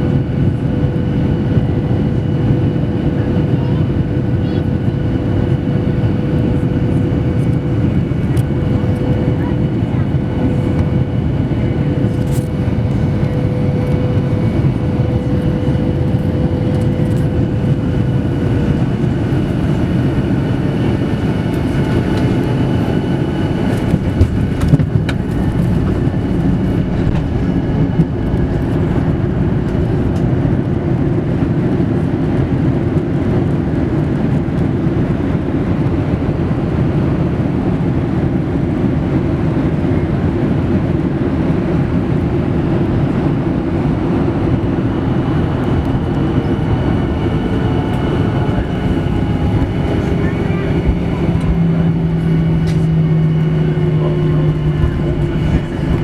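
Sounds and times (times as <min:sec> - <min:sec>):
airplane cabin rumble: 0:00.0 - 0:56.0
faint engine tones: 0:00.3 - 0:32.2, 0:43.7 - 0:56.0.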